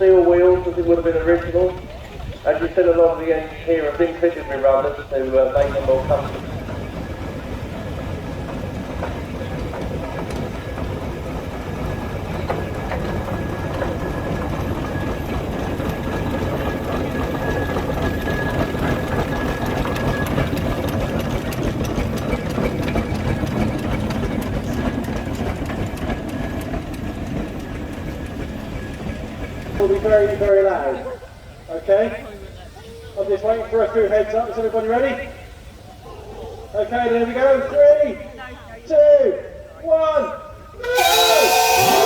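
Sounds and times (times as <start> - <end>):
steam traction engine rumbling: 0.0 - 42.0
rhythmic mechanical clatter: 5.6 - 30.4.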